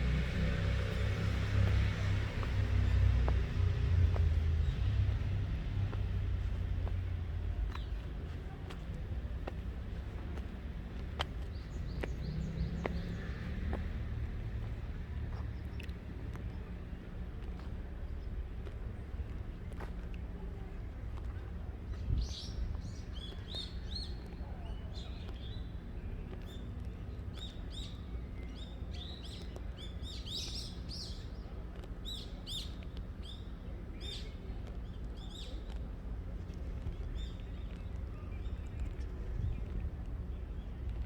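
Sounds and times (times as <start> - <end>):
small birds chirping: 0.0 - 20.0
low background rumble: 0.0 - 27.4.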